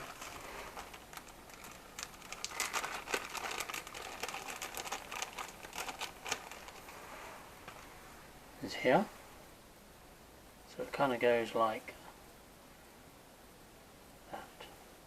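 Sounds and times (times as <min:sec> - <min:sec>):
plastic crinkling and clicking: 0:00.0 - 0:07.0.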